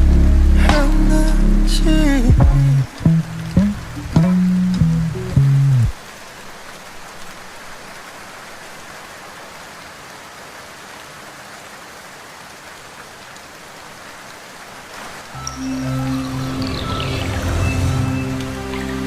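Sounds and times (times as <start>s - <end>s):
music notes: 0.0s - 6.0s, 15.4s - 19.0s
steady rain: 0.0s - 19.0s.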